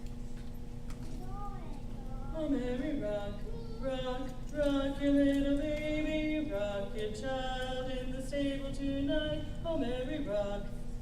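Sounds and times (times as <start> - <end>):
vocal group singing in harmony: 2.5 - 10.8.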